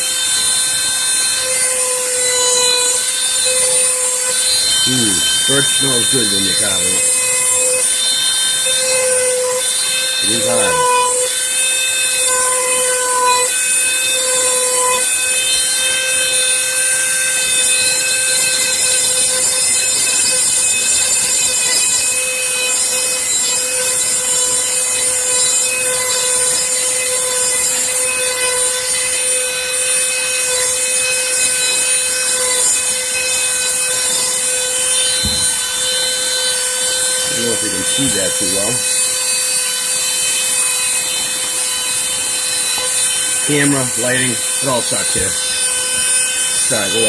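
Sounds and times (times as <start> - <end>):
bit rasping wood: 0.0 - 15.3, 25.1 - 47.0
rotary tool motor whine: 0.0 - 47.0.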